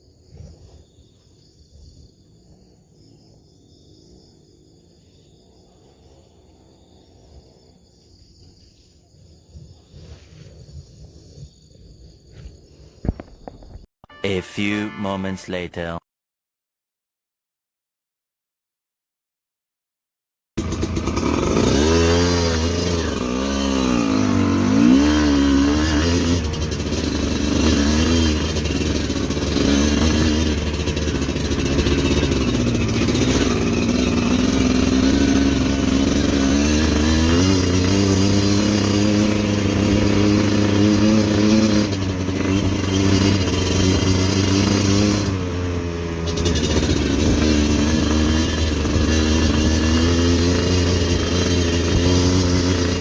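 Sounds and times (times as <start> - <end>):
motorcycle engine revving: 1.7 - 8.9, 20.6 - 53.0.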